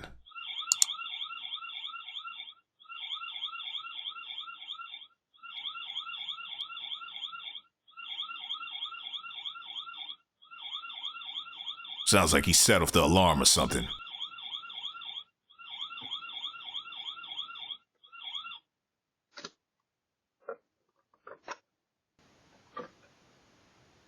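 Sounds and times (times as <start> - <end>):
electronic alarm siren chirping: 0.3 - 12.0, 14.0 - 18.7.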